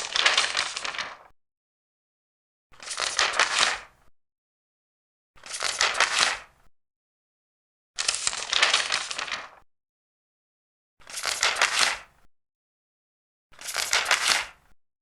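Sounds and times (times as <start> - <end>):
paper pages turning: 0.0 - 1.3, 2.8 - 3.9, 5.4 - 6.5, 8.0 - 9.6, 11.0 - 12.1, 13.6 - 14.6.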